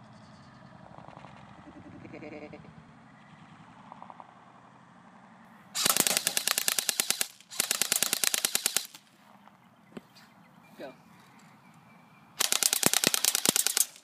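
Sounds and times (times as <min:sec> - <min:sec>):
airsoft rifle firing full auto: 0:05.8 - 0:09.0, 0:12.4 - 0:14.0.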